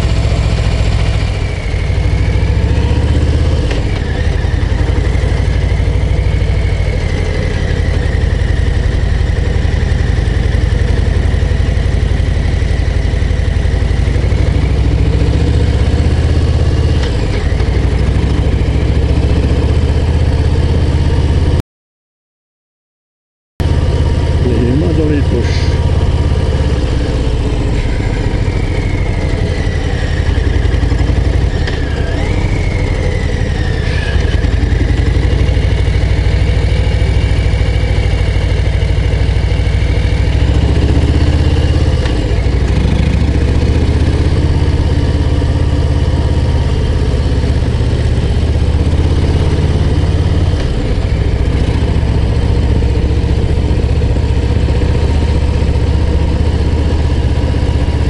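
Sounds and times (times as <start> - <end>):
motorcycle engine running: 0.0 - 21.6, 23.6 - 58.0.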